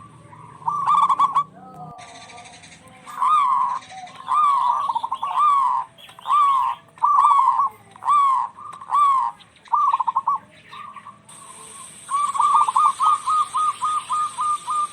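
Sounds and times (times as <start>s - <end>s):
doves cooing: 0.0s - 14.9s
high-pitched hiss: 11.3s - 14.9s.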